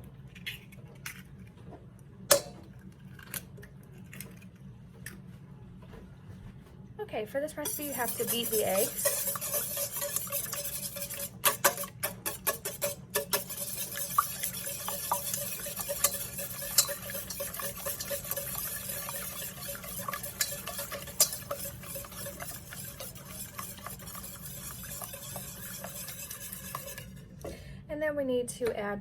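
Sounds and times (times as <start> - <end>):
wire whisk beating eggs in bowl: 7.6 - 27.5.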